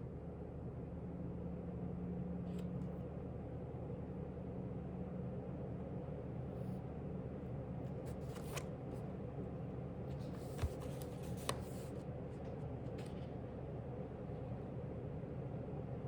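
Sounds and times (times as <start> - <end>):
low room hum: 0.0 - 16.0
paper pages rustling: 8.0 - 8.7, 10.1 - 13.3.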